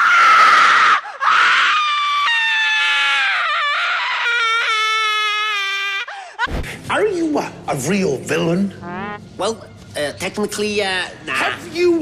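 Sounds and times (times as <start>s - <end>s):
person screaming and wailing: 0.0s - 6.1s.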